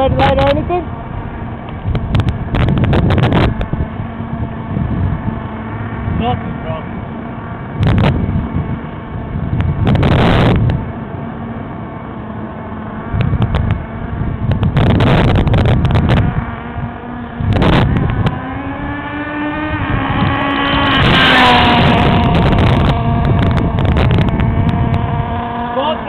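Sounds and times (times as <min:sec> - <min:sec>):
rc car engine buzzing: 0:12.2 - 0:26.0
loud rushing noise: 0:13.1 - 0:26.0.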